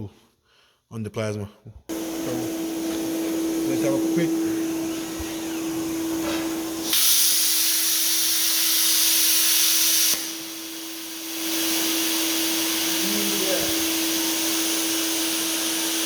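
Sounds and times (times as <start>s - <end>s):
machine steady hum: 1.9s - 7.1s
plasma torch air hiss: 1.9s - 16.0s.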